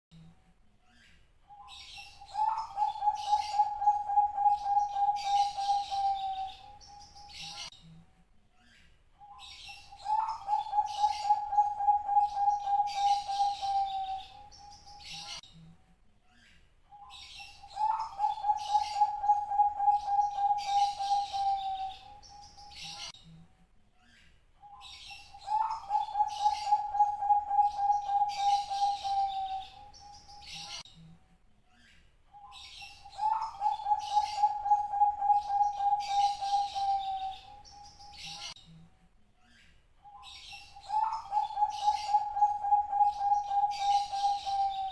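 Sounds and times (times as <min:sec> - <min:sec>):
dove cooing: 0:02.0 - 0:07.0, 0:09.9 - 0:15.2, 0:17.4 - 0:22.9, 0:25.1 - 0:30.7, 0:33.0 - 0:38.3, 0:40.8 - 0:44.9.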